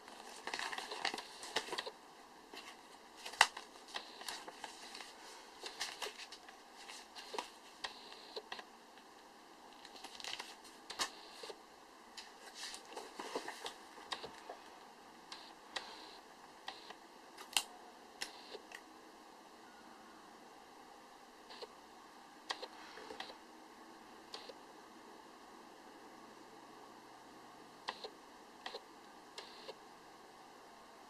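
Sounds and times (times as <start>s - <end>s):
packaging crinkling: 0.0s - 1.9s, 2.6s - 7.6s, 9.8s - 11.1s.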